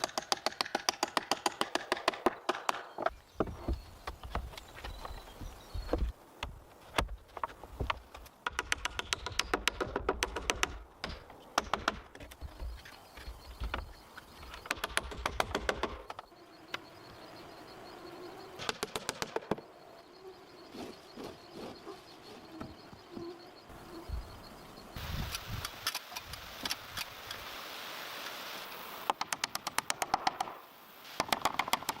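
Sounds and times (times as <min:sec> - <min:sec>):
faint steady high tone: 0:16.2 - 0:18.6, 0:19.6 - 0:25.2.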